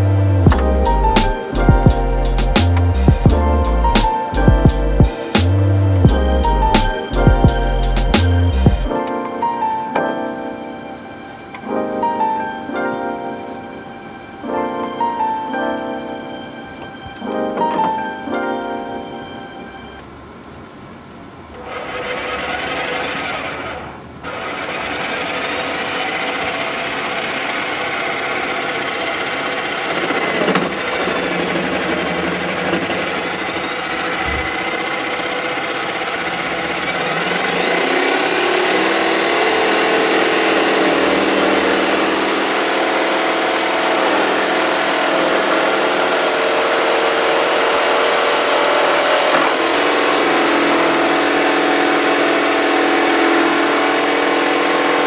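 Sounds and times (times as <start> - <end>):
jigsaw running: 21.6 - 55.0.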